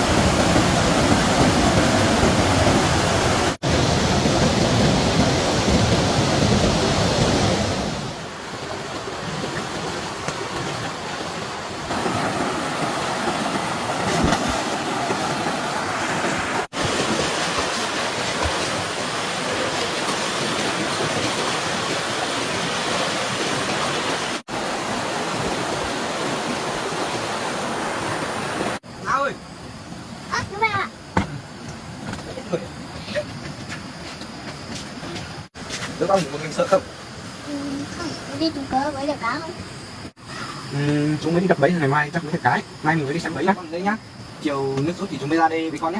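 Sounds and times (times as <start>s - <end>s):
stream water rushing: 0.0s - 29.2s.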